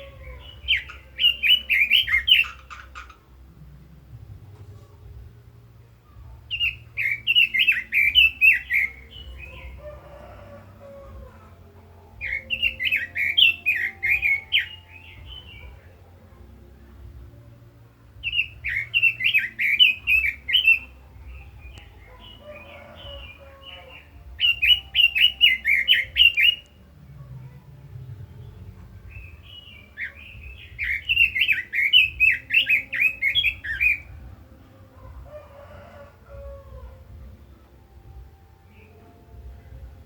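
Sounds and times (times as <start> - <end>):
bird warbling song: 0.0 - 3.8, 6.2 - 16.6, 18.2 - 26.9, 28.2 - 34.2.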